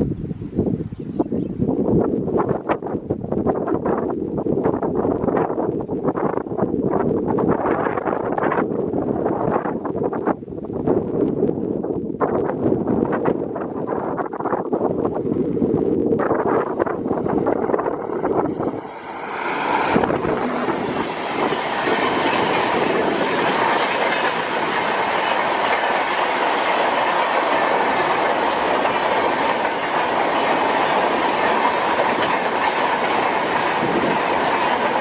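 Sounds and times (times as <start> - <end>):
train wheels clattering on rails: 15.1 - 35.0.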